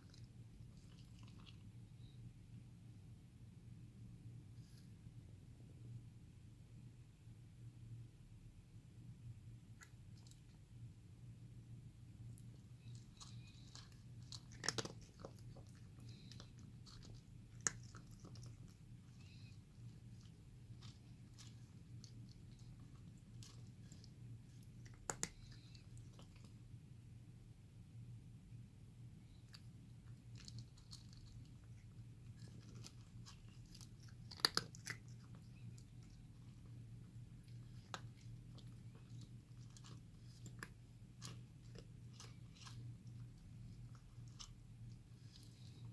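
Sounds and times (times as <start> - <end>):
cat crunching food: 0.0 - 2.1, 12.2 - 26.8, 29.3 - 45.9.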